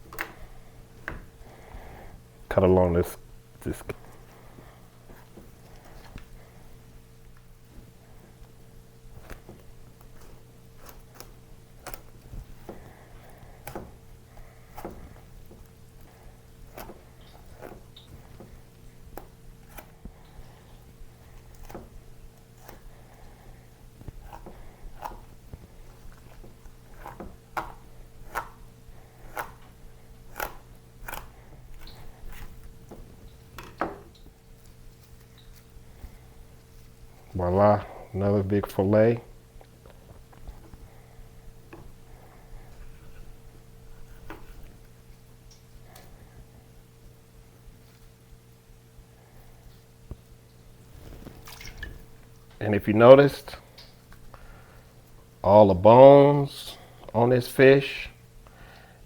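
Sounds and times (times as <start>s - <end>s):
faint steady hum: 0.0s - 59.0s
knife cutting fish: 9.1s - 34.0s.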